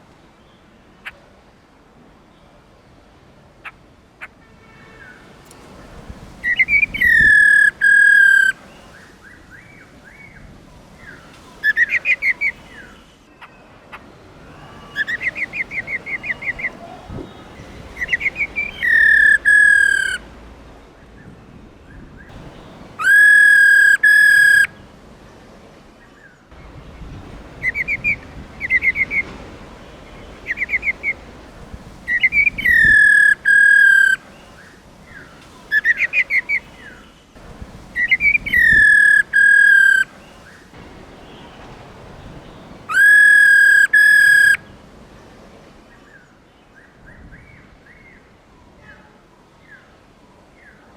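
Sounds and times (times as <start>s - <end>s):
bird loud clear whistles: 6.4s - 10.4s, 14.5s - 20.2s, 23.0s - 24.8s, 27.6s - 29.4s, 30.2s - 31.2s, 32.1s - 37.0s, 38.0s - 40.6s, 42.9s - 44.6s.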